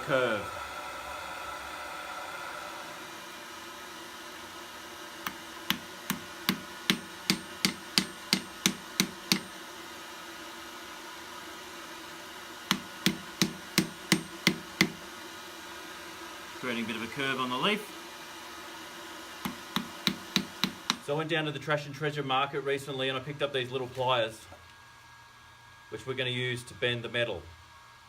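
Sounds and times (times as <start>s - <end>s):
hammer striking hot metal: 5.3s - 9.6s, 12.7s - 15.0s, 19.4s - 21.0s.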